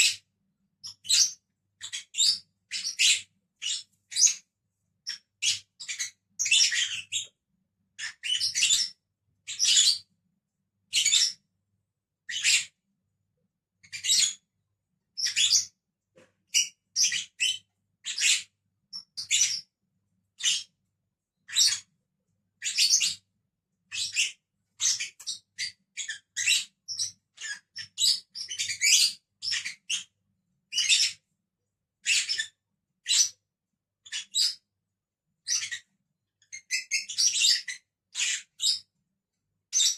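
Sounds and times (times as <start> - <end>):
lovebirds chirping: 0.8 - 4.4, 5.0 - 7.4, 8.0 - 10.1, 10.9 - 11.4, 12.3 - 12.8, 13.8 - 14.4, 15.2 - 15.8, 16.5 - 19.7, 20.4 - 20.7, 21.5 - 21.9, 22.6 - 23.2, 23.9 - 30.1, 30.7 - 31.2, 35.5 - 35.8, 36.5 - 38.9.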